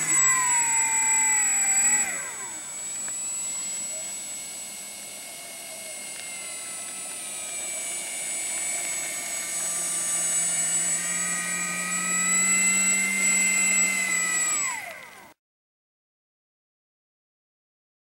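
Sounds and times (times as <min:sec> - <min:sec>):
model plane motor whining: 0:00.0 - 0:15.4.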